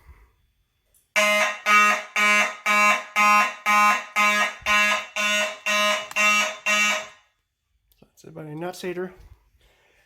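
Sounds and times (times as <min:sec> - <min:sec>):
fire alarm horn pulsing: 0:01.1 - 0:07.4.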